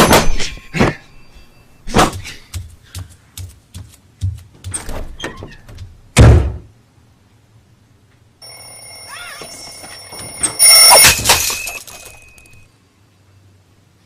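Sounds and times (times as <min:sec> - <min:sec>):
thumps and knocks: 0:01.9 - 0:06.7.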